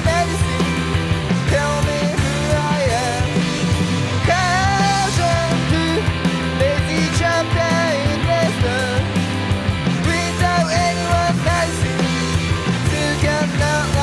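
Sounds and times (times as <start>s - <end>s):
person singing: 0.0s - 9.3s, 10.0s - 14.0s
rock band playing: 0.0s - 14.0s.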